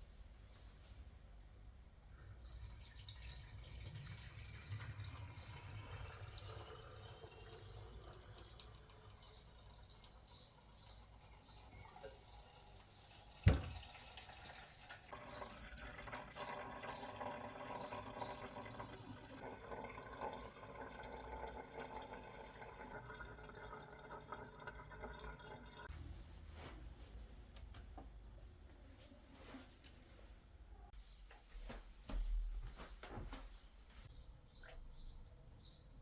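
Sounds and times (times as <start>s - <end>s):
water running and dripping: 2.1s - 25.9s, 34.0s - 36.0s.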